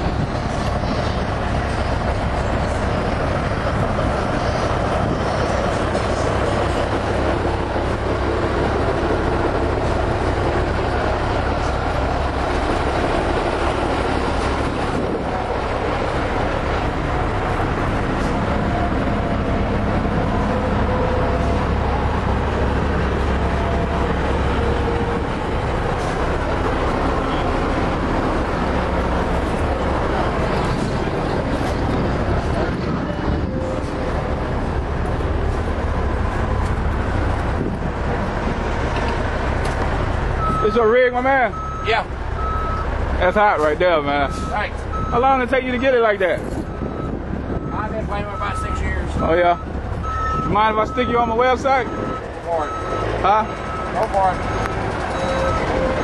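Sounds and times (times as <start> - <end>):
diesel truck engines idling: 0.0 - 56.0.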